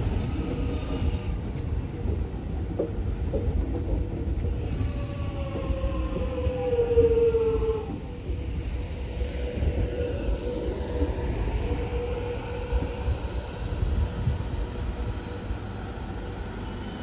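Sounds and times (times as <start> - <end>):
train wheels squealing: 0.0 - 1.8, 4.5 - 17.0
train low rumble: 0.0 - 17.0.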